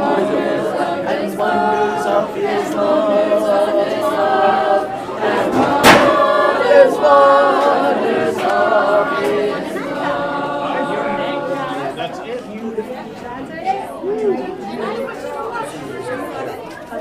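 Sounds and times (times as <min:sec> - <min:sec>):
group singing unaccompanied: 0:00.0 - 0:12.4
sharp knock: 0:05.8 - 0:06.2.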